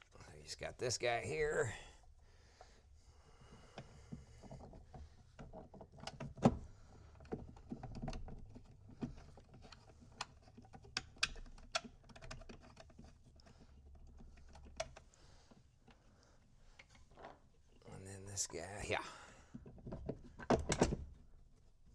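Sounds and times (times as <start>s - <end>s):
plastic parts clicking and knocking: 3.7s - 17.5s, 19.5s - 21.3s.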